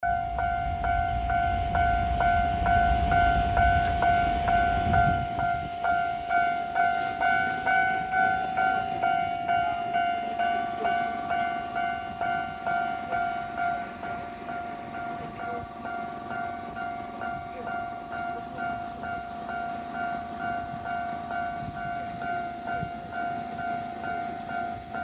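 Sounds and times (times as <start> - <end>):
electric train rumbling: 0.0 - 25.0
level-crossing alarm bell ringing: 0.0 - 25.0.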